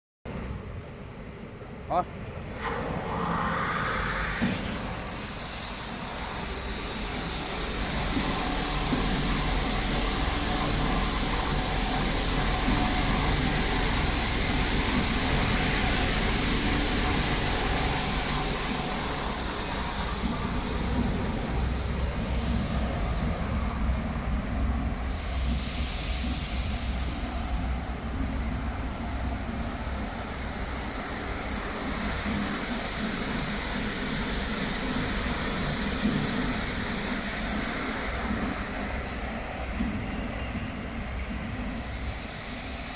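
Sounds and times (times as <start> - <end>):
washing machine running: 2.5 - 42.9.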